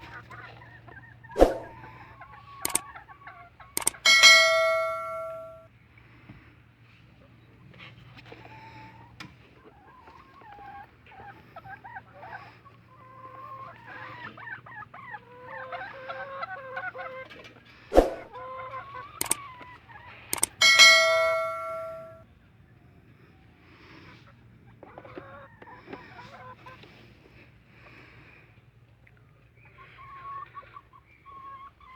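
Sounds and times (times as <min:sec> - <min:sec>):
chickens clucking: 0:00.0 - 0:05.7, 0:07.2 - 0:22.2, 0:23.8 - 0:28.0, 0:28.6 - 0:31.9
sharp knock: 0:01.4 - 0:01.8, 0:18.0 - 0:18.3
loud metallic clang: 0:03.8 - 0:05.6, 0:20.5 - 0:22.2.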